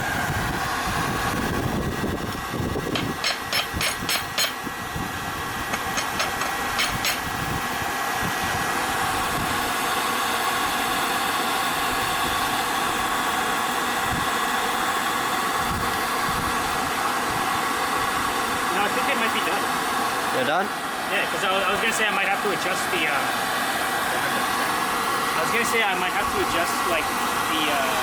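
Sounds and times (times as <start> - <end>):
hammer striking metal: 3.0 - 4.6, 6.0 - 7.2.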